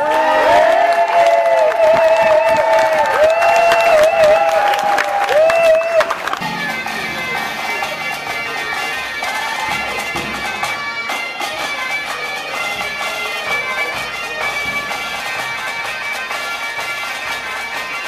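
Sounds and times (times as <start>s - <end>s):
bagpipe music: 6.1s - 18.0s.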